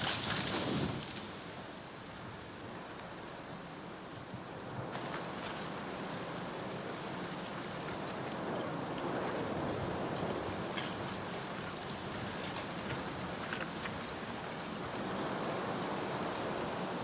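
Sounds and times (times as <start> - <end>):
lava flow gritty rushing: 0.0 - 1.6, 4.6 - 17.0.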